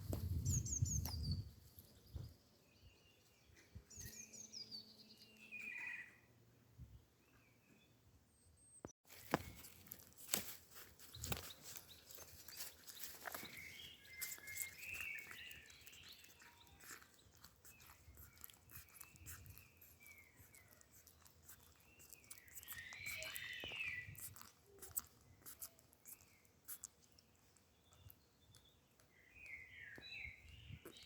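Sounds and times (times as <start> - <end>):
short chirping bird calls: 0.1 - 6.3, 11.0 - 31.0
beak clicking on meat and bone: 9.2 - 31.0.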